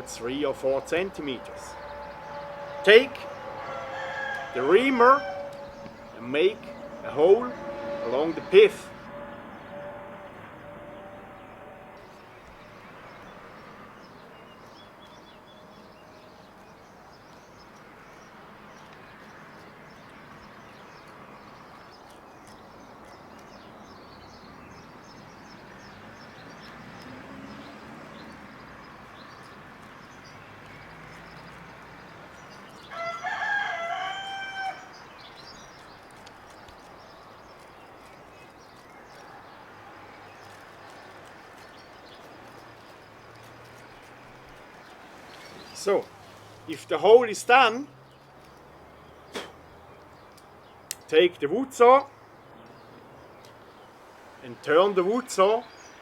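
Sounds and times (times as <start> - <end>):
rooster crowing: 1.7 - 6.1, 32.8 - 35.0.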